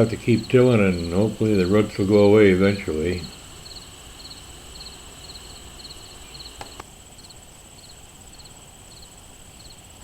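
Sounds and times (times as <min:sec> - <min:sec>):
high-pitched insect drone: 0:00.0 - 0:09.8
crickets chirping: 0:00.0 - 0:10.0
short clicks: 0:06.2 - 0:06.9.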